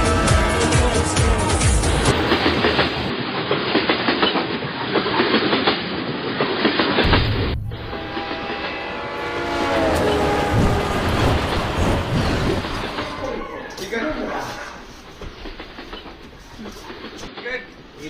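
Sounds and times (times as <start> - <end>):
train horn: 0.0 - 2.2, 7.6 - 14.9
train clattering on rails: 0.0 - 18.0.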